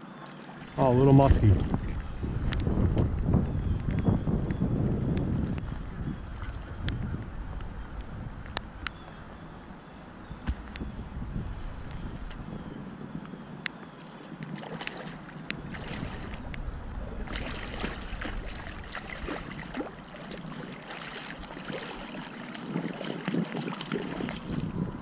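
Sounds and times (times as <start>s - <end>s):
river water splashing: 0.0s - 2.4s, 5.3s - 10.8s, 13.8s - 25.0s
wind on microphone: 0.8s - 25.0s.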